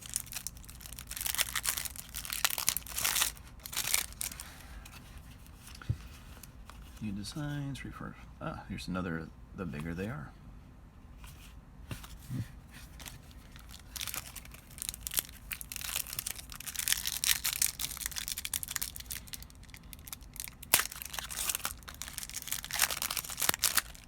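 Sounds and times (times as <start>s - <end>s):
foil wrapper crinkling and tearing: 0.0s - 5.8s, 12.9s - 24.0s.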